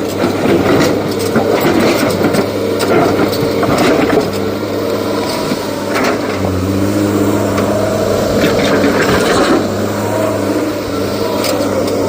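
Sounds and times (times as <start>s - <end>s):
heavy diesel engine running: 0.0s - 12.0s.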